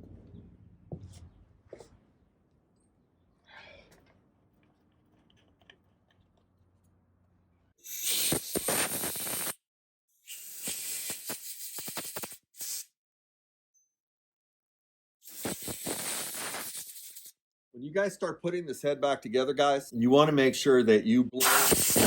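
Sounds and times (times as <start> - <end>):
compressed air blowgun hissing: 7.8 - 9.6, 10.2 - 12.9, 15.2 - 17.3, 21.4 - 22.0.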